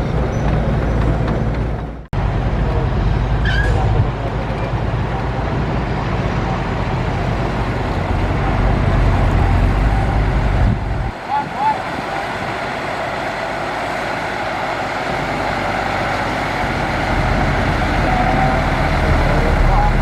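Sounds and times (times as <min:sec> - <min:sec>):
heavy diesel engine running: 0:00.0 - 0:20.0
brief high squeak: 0:03.4 - 0:03.8.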